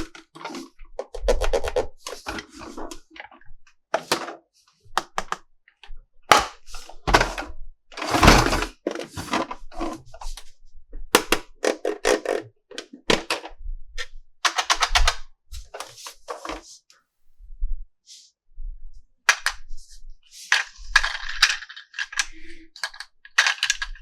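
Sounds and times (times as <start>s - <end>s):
plastic toy parts clicking: 14.5s - 15.2s, 20.5s - 24.0s.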